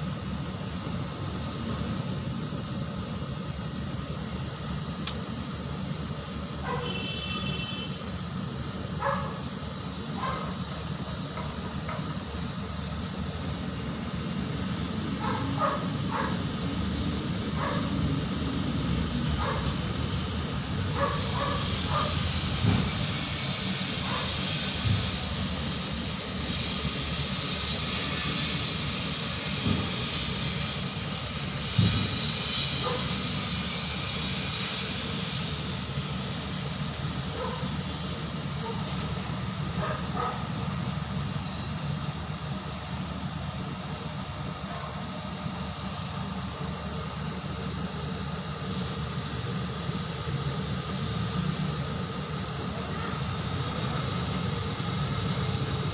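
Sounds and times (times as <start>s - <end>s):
low mechanical hum: 0.0s - 55.9s
hiss: 20.9s - 40.6s.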